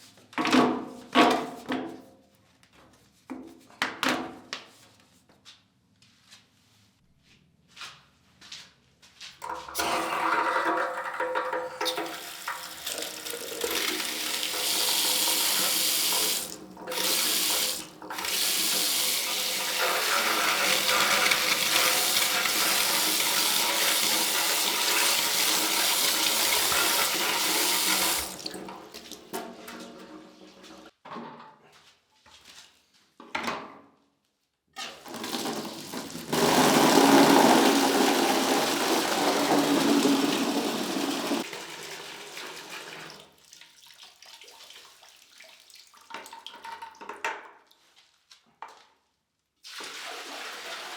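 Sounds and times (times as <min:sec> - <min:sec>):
tap water running into sink: 0:09.8 - 0:29.5, 0:34.8 - 0:47.2.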